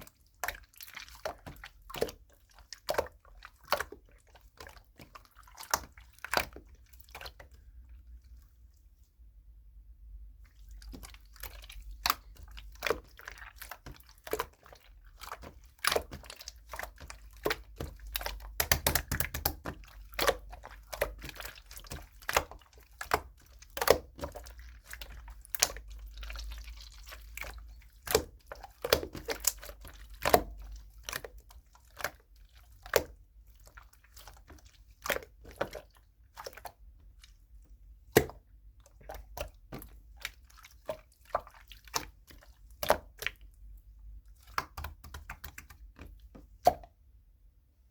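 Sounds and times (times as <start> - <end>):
slime squishing and popping: 10.8 - 33.2.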